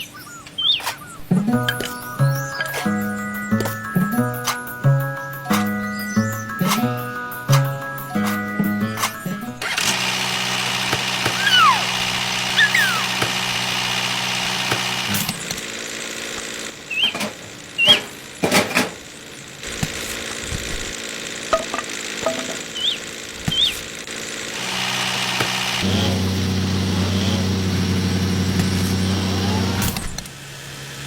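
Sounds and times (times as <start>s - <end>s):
high chirping squeaks: 0.0s - 1.3s, 11.3s - 13.2s, 16.9s - 18.4s
motor humming: 5.5s - 31.0s.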